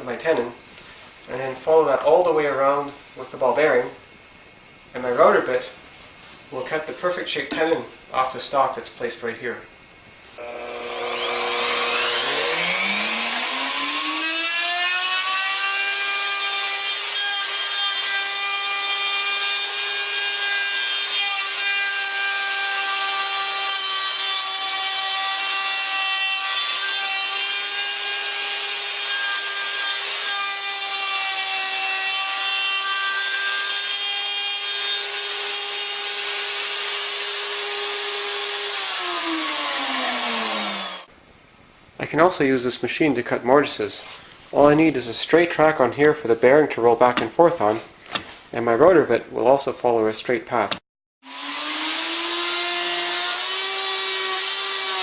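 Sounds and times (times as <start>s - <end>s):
wood router whining: 10.4s - 41.1s, 51.2s - 55.0s.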